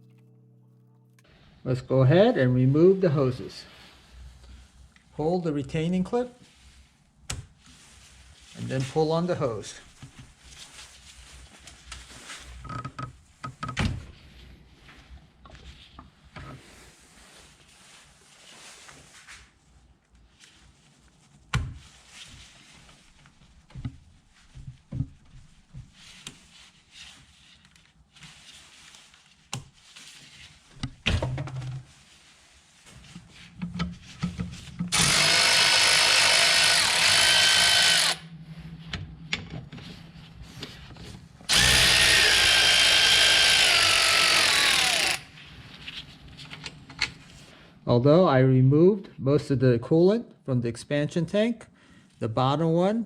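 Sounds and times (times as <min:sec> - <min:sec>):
cordless power tool spinning socket: 0:34.9 - 0:38.3, 0:41.5 - 0:45.3.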